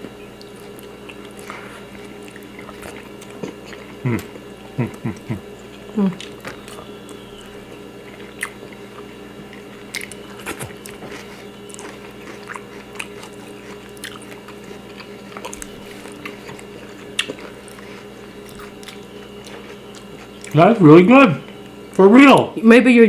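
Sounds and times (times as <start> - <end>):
people chewing food: 0.0 - 22.5
faint steady hum: 0.0 - 23.0.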